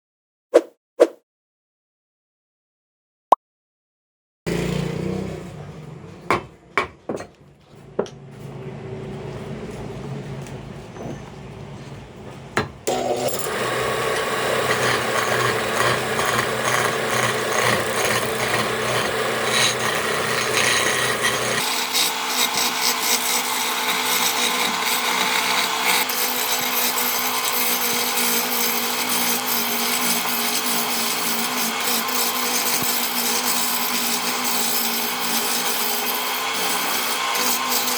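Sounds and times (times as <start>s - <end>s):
sharp knocks: 6.3s - 7.3s
wood lathe turning: 12.6s - 37.9s
turning tool scraping wood: 12.9s - 37.9s.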